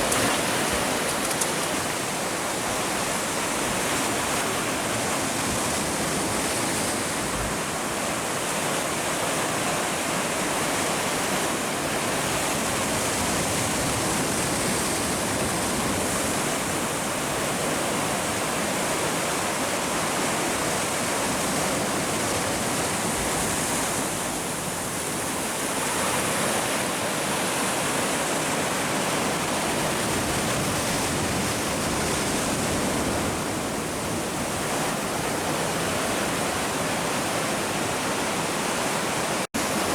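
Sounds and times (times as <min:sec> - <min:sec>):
surf washing against rocks: 0:00.0 - 0:39.9.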